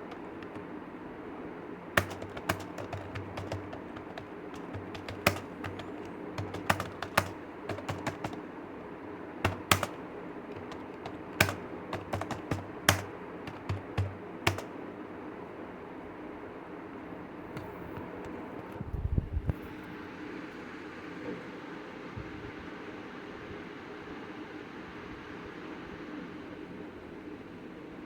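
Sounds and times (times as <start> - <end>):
keyboard typing: 0.0 - 0.8, 2.0 - 8.8, 9.4 - 14.8, 17.5 - 18.7.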